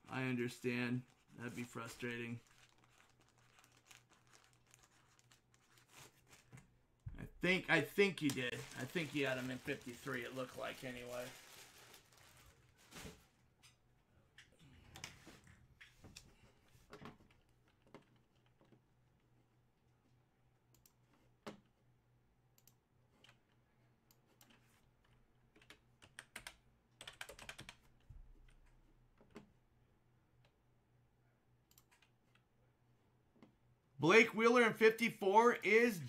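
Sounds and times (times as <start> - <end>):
computer keyboard keystrokes: 25.6 - 27.8.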